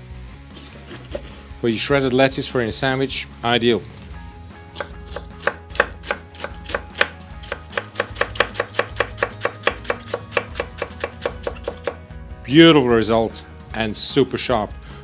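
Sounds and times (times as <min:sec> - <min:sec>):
knife chopping lettuce: 0:04.8 - 0:12.0.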